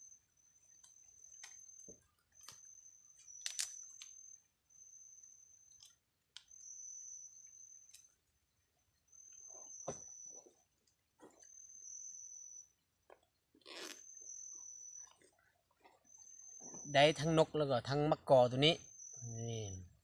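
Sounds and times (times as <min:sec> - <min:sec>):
insect trilling: 0:00.0 - 0:08.1, 0:13.6 - 0:20.0.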